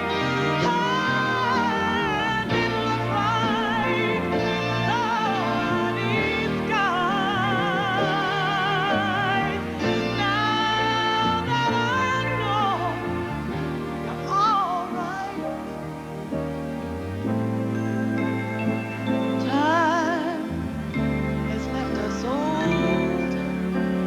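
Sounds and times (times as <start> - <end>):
woman singing wordlessly: 0.0 - 13.4, 14.1 - 15.8, 19.4 - 20.7, 21.5 - 23.5
instrumental accompaniment: 0.0 - 24.0.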